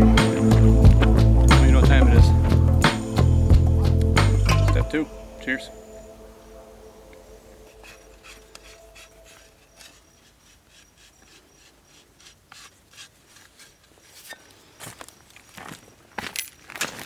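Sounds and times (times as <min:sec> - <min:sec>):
camping gear rustling and clicking: 0:07.1 - 0:17.0.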